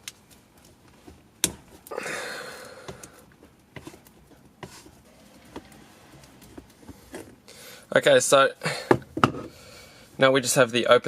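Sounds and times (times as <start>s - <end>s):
rustling: 3.0s - 7.8s.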